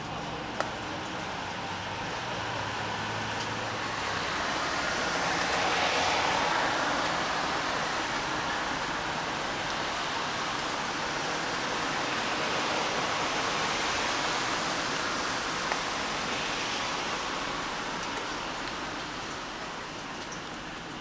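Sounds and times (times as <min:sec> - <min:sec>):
steady rain falling: 0:00.0 - 0:21.0
raindrop ticks: 0:00.1 - 0:06.2, 0:08.7 - 0:11.7, 0:17.1 - 0:21.0.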